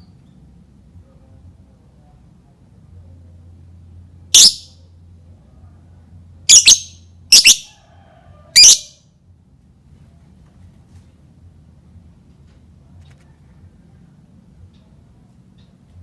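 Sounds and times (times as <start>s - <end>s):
lovebird high-pitched calls: 4.4s - 4.7s, 6.5s - 7.7s, 8.6s - 9.0s.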